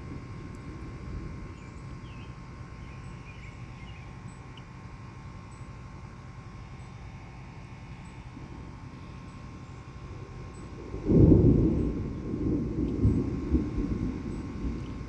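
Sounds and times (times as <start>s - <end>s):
thunder rumble: 0.0s - 2.0s, 10.1s - 15.0s.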